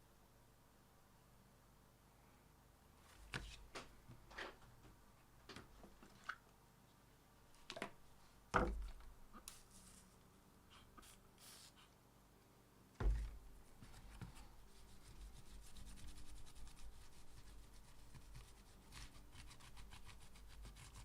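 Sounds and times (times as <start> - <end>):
dull thump: 13.0 - 13.5.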